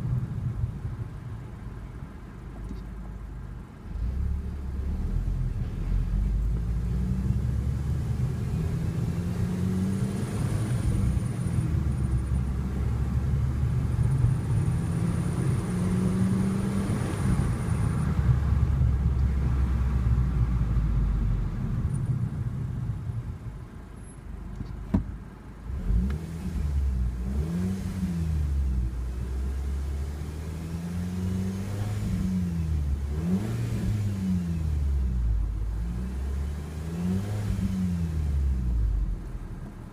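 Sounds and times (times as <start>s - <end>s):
car engine revving: 3.9s - 22.2s, 25.7s - 39.2s.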